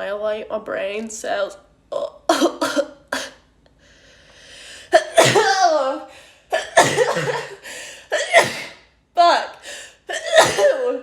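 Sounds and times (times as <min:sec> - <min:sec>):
woman sneezing: 0:04.9 - 0:08.8, 0:10.1 - 0:11.0.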